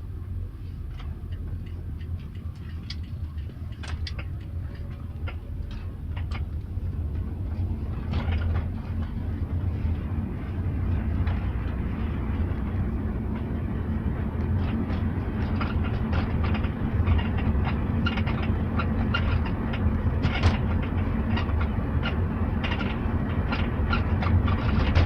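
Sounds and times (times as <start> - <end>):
car rumble on the move: 0.0 - 25.0.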